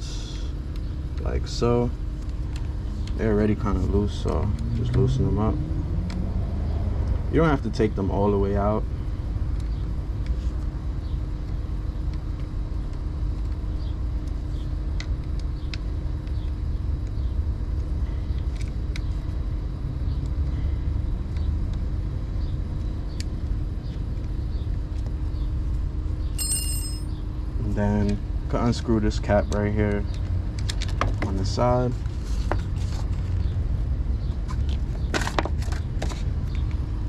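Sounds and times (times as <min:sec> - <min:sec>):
faint hum: 0:00.0 - 0:05.9, 0:07.2 - 0:30.7
distant traffic rumble: 0:00.0 - 0:26.2, 0:27.2 - 0:37.0.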